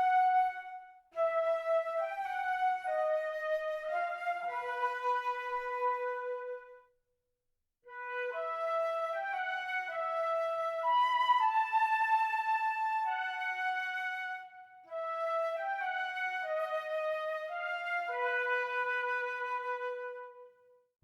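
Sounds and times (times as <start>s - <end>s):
flute playing slow legato: 0.0s - 6.8s.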